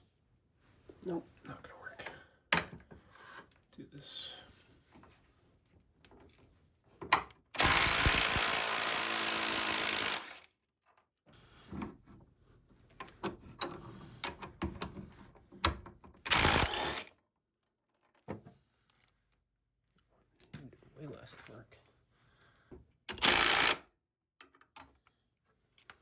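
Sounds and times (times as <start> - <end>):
power drill running: 7.6 - 10.4, 16.3 - 17.1, 23.1 - 23.8.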